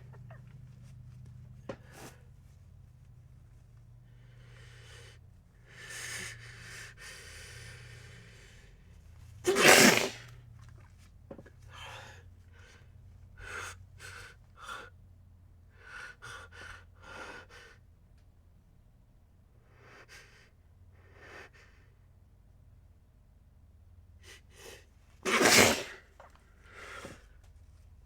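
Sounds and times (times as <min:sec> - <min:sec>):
short quick breaths: 0:04.0 - 0:10.4, 0:24.2 - 0:27.5
person sneezing: 0:09.5 - 0:10.2, 0:25.2 - 0:26.0.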